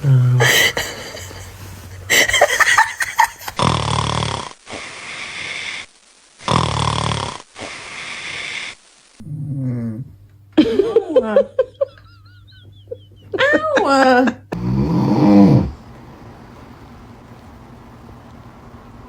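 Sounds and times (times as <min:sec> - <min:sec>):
person snoring: 0:00.0 - 0:10.2, 0:14.5 - 0:15.8.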